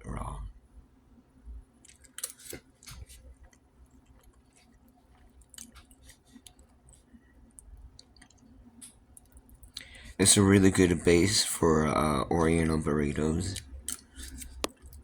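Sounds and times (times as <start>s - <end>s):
person chewing food: 1.8s - 10.1s, 13.5s - 15.0s.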